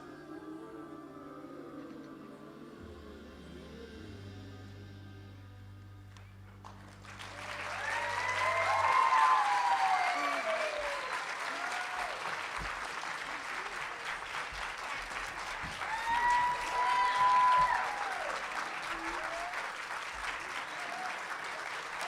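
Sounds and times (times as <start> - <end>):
congregation applauding: 6.5 - 22.0
cheering voices: 7.1 - 22.0.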